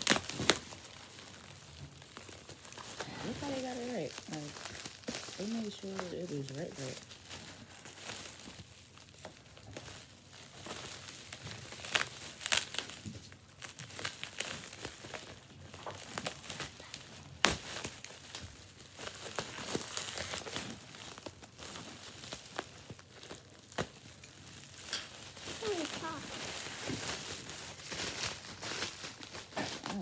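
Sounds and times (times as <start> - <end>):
bubble wrap snapping: 0.0 - 30.0
plastic packaging crinkling: 0.0 - 30.0.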